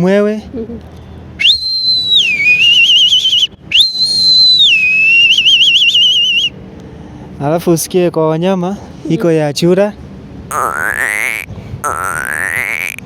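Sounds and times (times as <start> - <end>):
man whistling bird call: 1.4 - 6.6.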